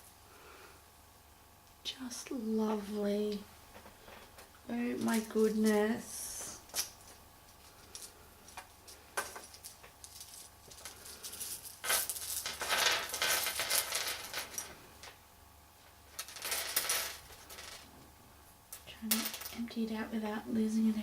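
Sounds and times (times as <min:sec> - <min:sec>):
beads clattering and clinking: 0:05.0 - 0:15.1, 0:16.1 - 0:17.9.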